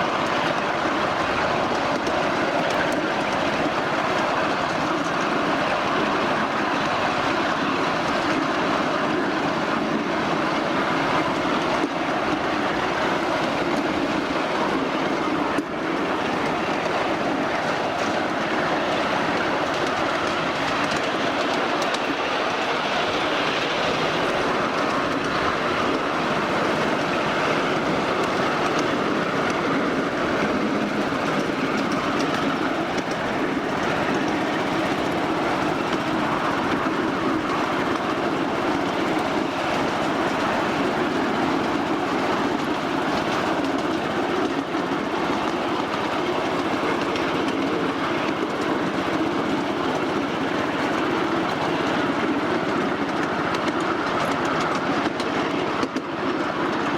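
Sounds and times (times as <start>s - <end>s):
small wheels on rails: 0.0s - 56.9s
faint track clicks: 11.7s - 56.9s.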